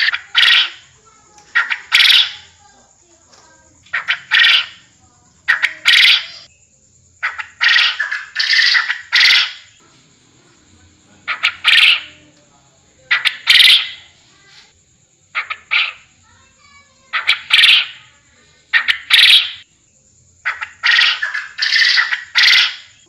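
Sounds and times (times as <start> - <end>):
harsh quail double calls: 0.0 - 2.5, 3.9 - 6.5, 7.2 - 9.8, 11.2 - 12.3, 13.1 - 14.1, 15.4 - 16.1, 17.1 - 18.1, 18.7 - 19.6, 20.4 - 23.0.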